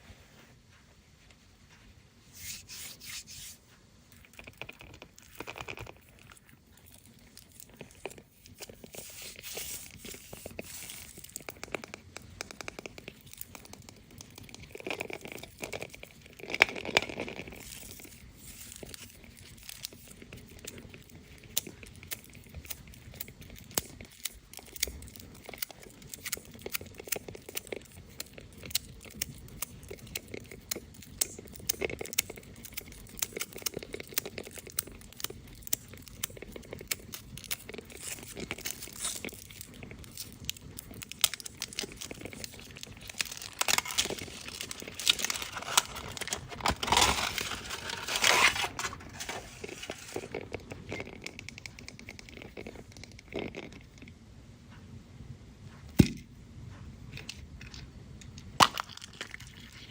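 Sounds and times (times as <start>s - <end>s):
foil wrappers crinkling and tearing: 31.2s - 50.6s.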